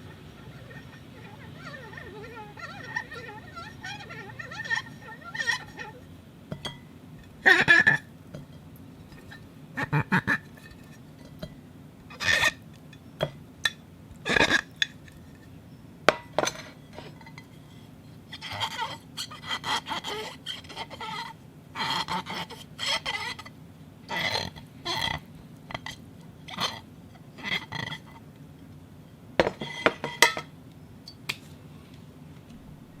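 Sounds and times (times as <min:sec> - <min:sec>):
glass squeaking and chirping: 0:00.0 - 0:08.1, 0:12.1 - 0:13.4, 0:14.3 - 0:17.6, 0:18.3 - 0:23.5, 0:32.6 - 0:33.0.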